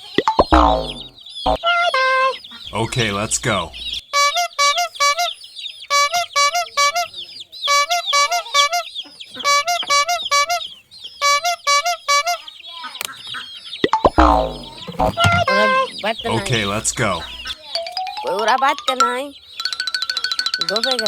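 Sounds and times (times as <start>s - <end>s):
playful bouncy music: 0.0s - 1.6s, 13.8s - 21.0s.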